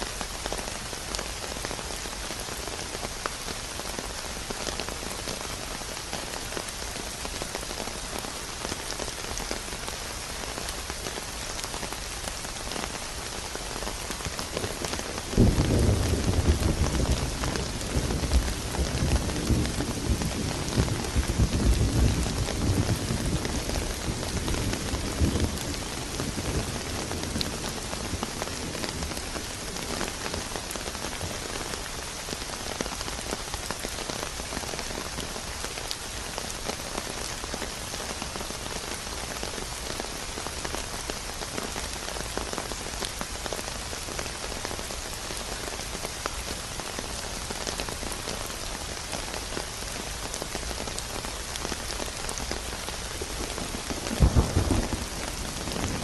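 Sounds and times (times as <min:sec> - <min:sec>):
steady rain falling: 0:00.0 - 0:56.0
low thunder rumble: 0:15.4 - 0:29.1, 0:53.2 - 0:56.0.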